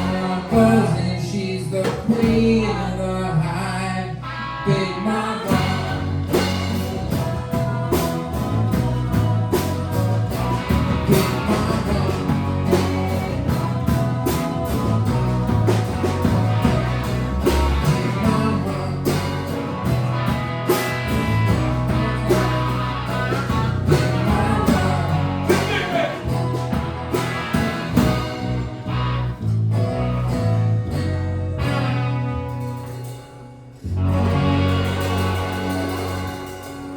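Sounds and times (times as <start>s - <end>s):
live blues-rock band: 0.0s - 36.9s
drums keeping steady beat: 1.8s - 2.7s, 5.5s - 29.6s, 34.1s - 36.9s.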